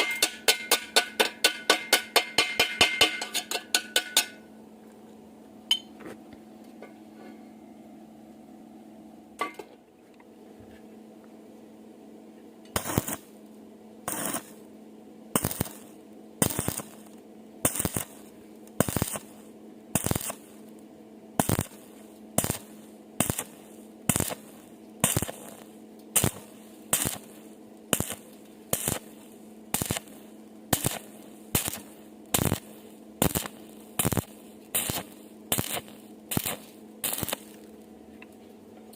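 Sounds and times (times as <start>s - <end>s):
hammer striking steel: 0.0s - 4.5s
electrical hum: 0.0s - 38.9s.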